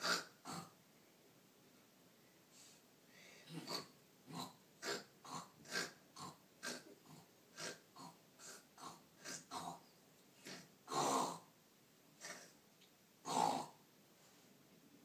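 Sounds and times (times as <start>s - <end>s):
person mock snoring: 0.0s - 0.7s, 3.5s - 9.8s, 10.4s - 11.5s, 13.2s - 13.8s.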